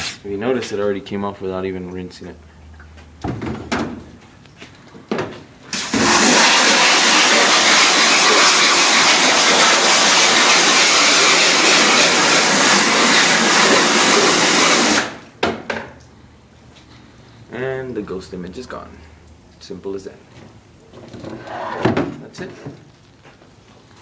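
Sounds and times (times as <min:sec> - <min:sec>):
water spray hissing: 0:05.7 - 0:15.2.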